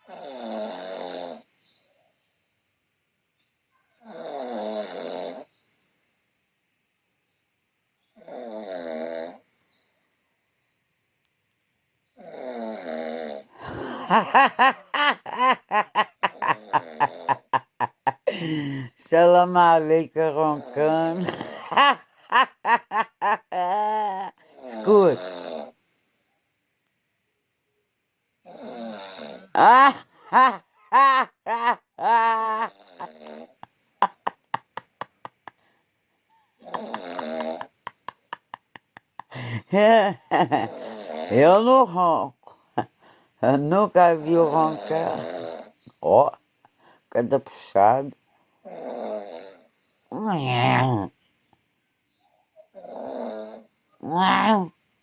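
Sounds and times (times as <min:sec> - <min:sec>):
person snoring: 0:00.0 - 0:01.5, 0:04.0 - 0:05.5, 0:08.1 - 0:09.4, 0:12.2 - 0:19.0, 0:20.4 - 0:22.6, 0:23.6 - 0:25.8, 0:28.4 - 0:35.6, 0:36.4 - 0:38.6, 0:39.2 - 0:42.6, 0:44.1 - 0:46.3, 0:48.6 - 0:51.1, 0:52.7 - 0:54.7
hearty laughter: 0:13.6 - 0:18.9, 0:20.8 - 0:25.1, 0:29.6 - 0:35.8, 0:36.6 - 0:40.8.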